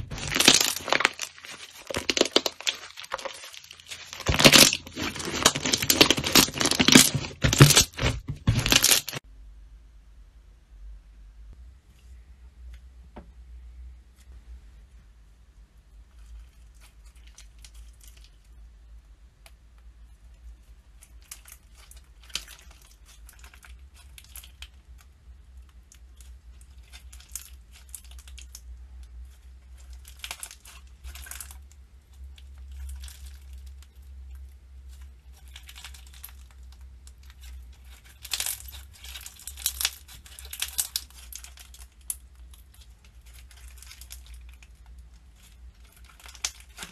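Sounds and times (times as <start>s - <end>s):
slime crackling and popping: 0.0s - 9.2s, 21.0s - 46.9s.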